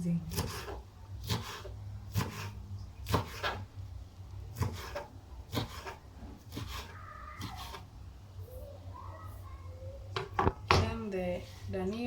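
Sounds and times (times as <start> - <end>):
knife chopping on board: 0.3 - 3.7, 4.5 - 7.8
knife scraping board: 0.3 - 3.7, 4.5 - 7.9.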